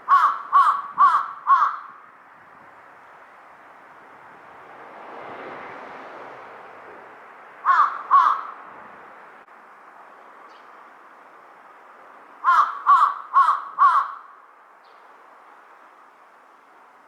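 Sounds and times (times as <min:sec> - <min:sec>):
crow cawing: 0:00.1 - 0:02.0, 0:07.6 - 0:08.6, 0:12.4 - 0:14.4.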